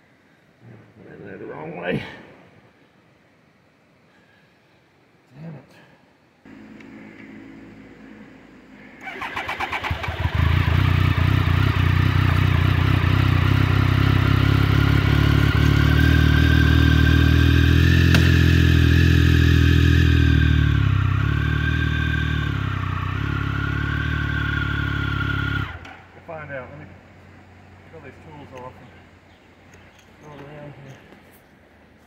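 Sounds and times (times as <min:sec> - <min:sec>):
motorcycle electric starter cranking: 0:09.0 - 0:10.9
motorcycle engine fast idle: 0:09.0 - 0:16.4.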